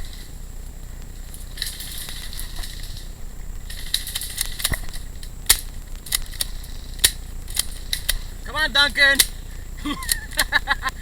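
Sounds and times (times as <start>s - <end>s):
rustling and crunching through brush: 0.0s - 10.8s
sharp clicks: 1.0s - 11.0s.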